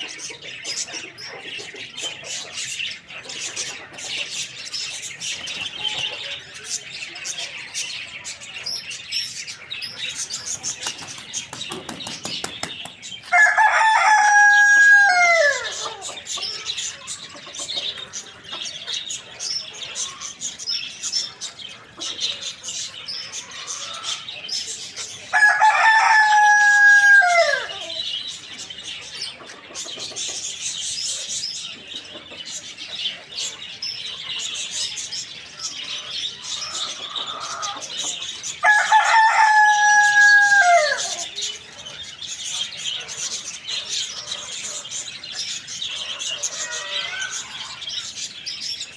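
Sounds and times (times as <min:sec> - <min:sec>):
birds chirping: 0:00.0 - 0:48.9
rooster crowing: 0:13.3 - 0:16.0, 0:25.3 - 0:28.0, 0:38.6 - 0:41.3.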